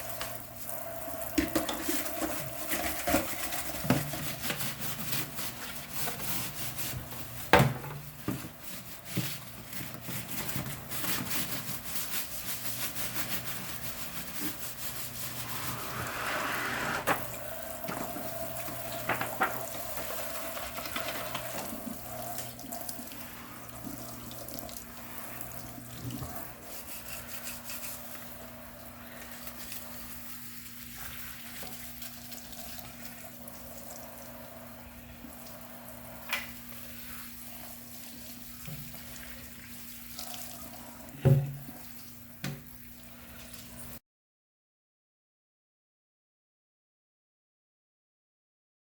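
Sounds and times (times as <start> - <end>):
tap water running into sink: 0.0 - 11.6, 17.0 - 36.9, 38.0 - 44.0.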